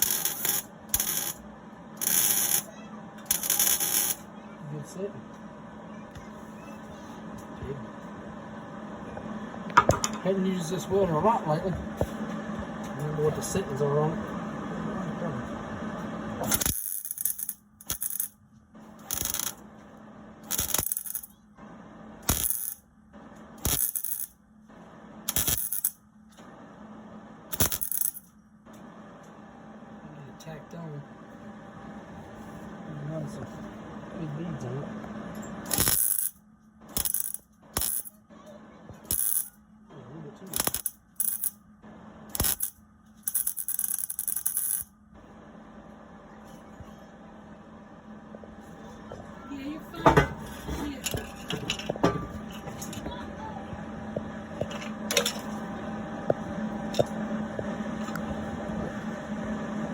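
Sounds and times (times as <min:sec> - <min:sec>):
high-pitched scraping crackle: 0:00.0 - 0:01.4, 0:02.0 - 0:04.3
welding arc crackle: 0:00.0 - 0:01.4, 0:02.0 - 0:02.7, 0:03.3 - 0:04.3, 0:16.4 - 0:18.4, 0:19.0 - 0:19.6, 0:20.4 - 0:21.4, 0:22.2 - 0:22.8, 0:23.6 - 0:24.3, 0:25.3 - 0:26.0, 0:27.5 - 0:28.2, 0:35.6 - 0:38.1, 0:39.1 - 0:39.6, 0:40.5 - 0:41.6, 0:42.3 - 0:44.9
faint steady hum: 0:00.0 - 0:59.9
metallic knock: 0:50.0 - 0:50.5.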